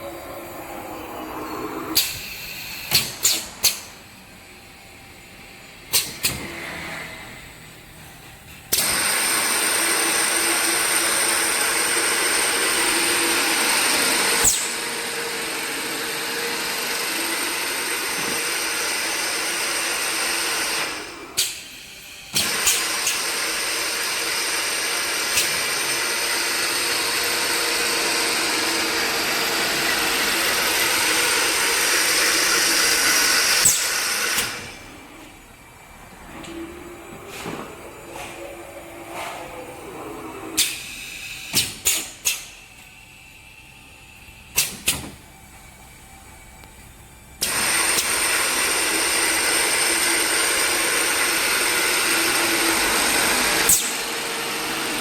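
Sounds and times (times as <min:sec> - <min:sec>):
drilling machine whirring: 0:08.7 - 0:42.8, 0:47.4 - 0:55.0.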